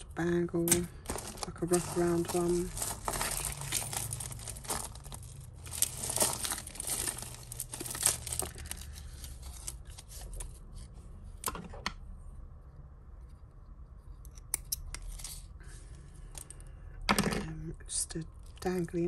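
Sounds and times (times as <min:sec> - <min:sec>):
plastic bag crinkling: 0:00.0 - 0:10.2.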